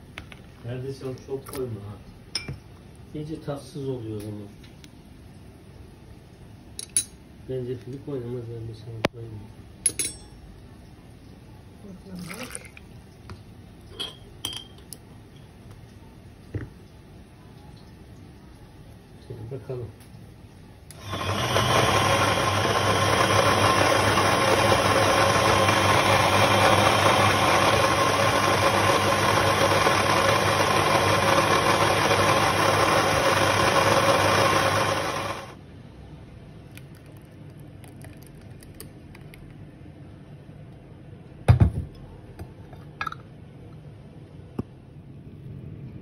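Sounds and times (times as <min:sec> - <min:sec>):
blender motor running: 0:20.9 - 0:35.6.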